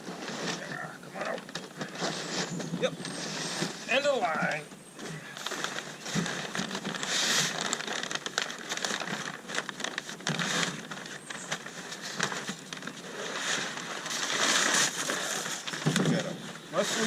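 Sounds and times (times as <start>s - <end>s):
packing material rustling: 5.2s - 17.0s.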